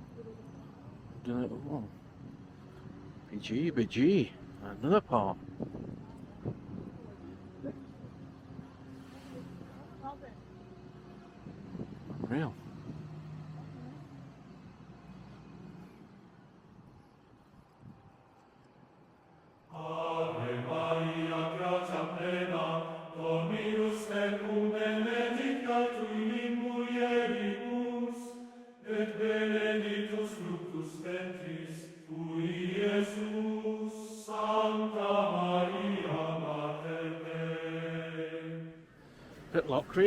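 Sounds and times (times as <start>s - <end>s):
low voice chanting: 19.7s - 40.0s.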